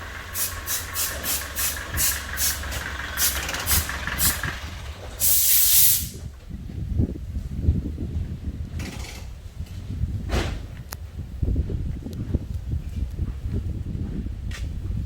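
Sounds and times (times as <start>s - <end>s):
low rumble: 0.0s - 15.0s
compressed air hissing bursts: 0.3s - 4.5s, 5.2s - 6.2s.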